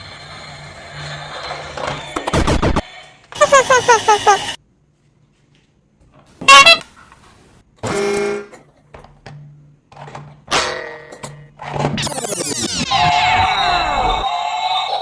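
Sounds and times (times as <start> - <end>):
horn-like honk: 6.4 - 6.8
falling tone: 11.9 - 14.7.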